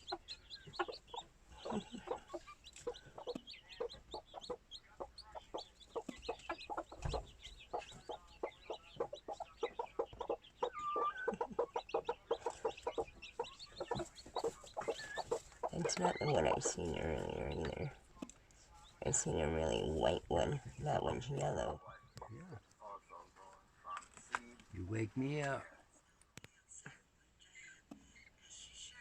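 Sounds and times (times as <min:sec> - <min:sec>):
hens clucking: 0:00.0 - 0:18.0, 0:19.0 - 0:24.1
chicks peeping: 0:00.0 - 0:24.1.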